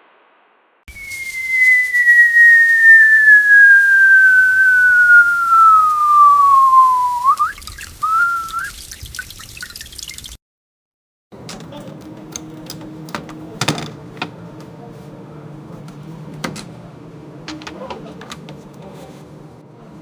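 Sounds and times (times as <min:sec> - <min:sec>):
cartoon falling whistle: 0:00.9 - 0:08.7
short wavering whistle: 0:00.9 - 0:08.8.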